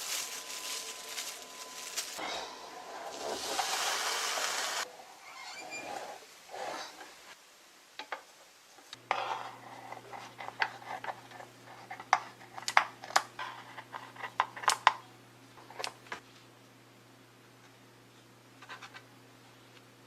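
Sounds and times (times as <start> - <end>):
appliance humming: 0.0 - 4.9.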